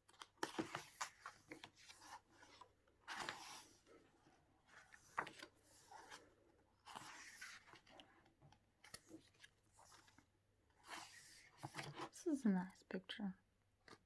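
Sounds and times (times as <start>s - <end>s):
book pages rustling and turning: 0.0s - 12.2s.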